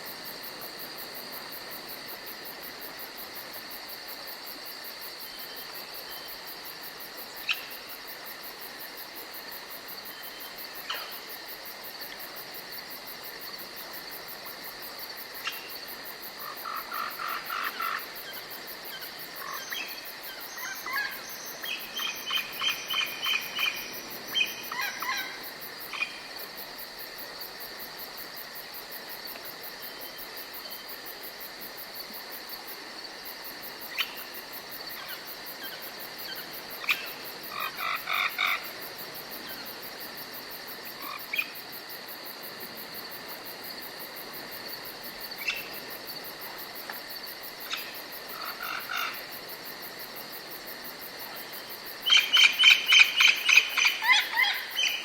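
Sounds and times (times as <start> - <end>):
crickets chirring: 0.0 - 55.0.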